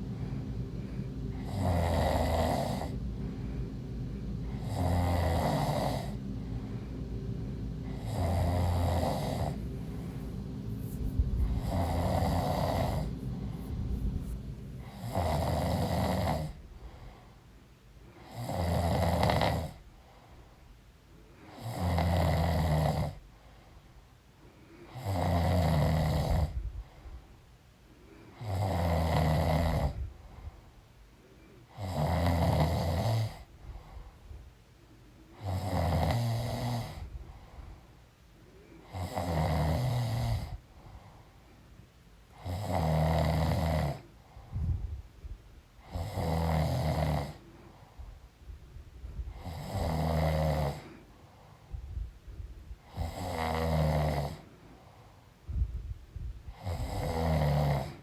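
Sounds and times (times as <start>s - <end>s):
woman snoring: 0.0s - 3.6s, 4.4s - 6.6s, 7.8s - 16.7s, 18.2s - 19.8s, 21.5s - 23.2s, 24.9s - 26.6s, 28.4s - 30.0s, 31.7s - 33.5s, 35.4s - 37.1s, 38.8s - 40.6s, 42.4s - 44.1s, 45.8s - 47.4s, 49.3s - 50.9s, 52.8s - 54.4s, 56.5s - 58.0s.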